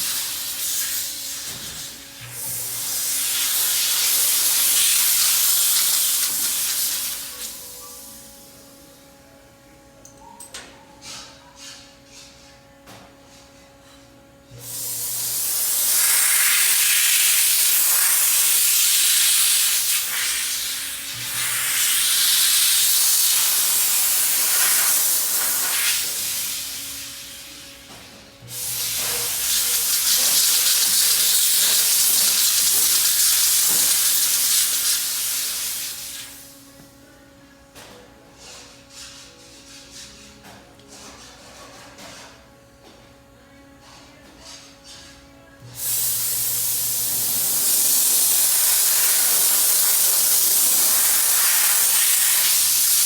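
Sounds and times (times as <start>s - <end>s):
steam cleaner hissing: 0.0s - 7.6s, 14.6s - 27.6s, 28.5s - 36.5s, 45.8s - 53.0s.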